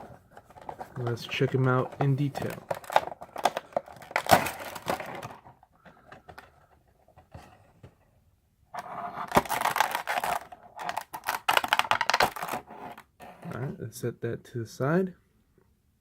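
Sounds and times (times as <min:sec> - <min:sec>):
cardboard and plastic packaging rustling: 0:00.0 - 0:07.9, 0:09.2 - 0:13.0.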